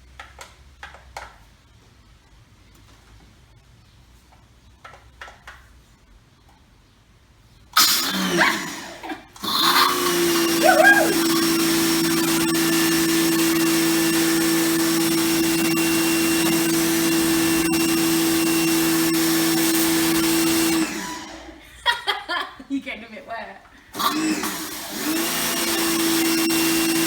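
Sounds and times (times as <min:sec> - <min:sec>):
pressure washer motor running: 0:07.8 - 0:21.8, 0:23.9 - 0:27.0.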